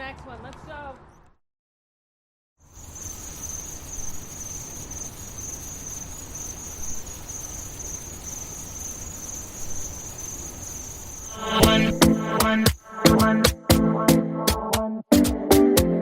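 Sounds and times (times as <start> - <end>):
insects chirring: 2.6 - 13.4.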